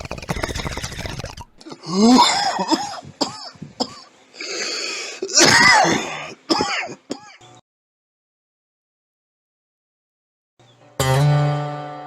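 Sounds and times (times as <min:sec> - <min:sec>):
person coughing and clearing throat: 0:01.6 - 0:04.1, 0:05.2 - 0:07.4.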